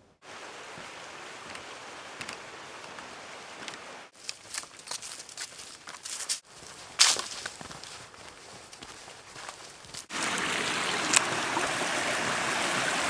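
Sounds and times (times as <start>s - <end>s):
footsteps crunching on dry leaves: 2.8s - 10.1s.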